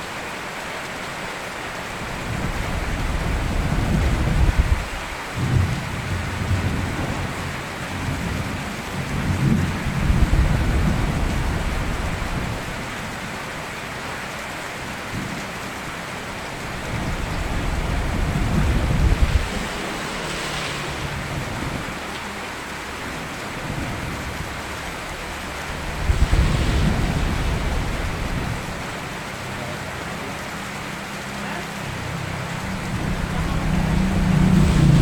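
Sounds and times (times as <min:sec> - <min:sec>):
steady rain falling: 0:00.0 - 0:35.0
low rolls of thunder: 0:16.7 - 0:22.0, 0:23.5 - 0:28.9, 0:32.4 - 0:35.0.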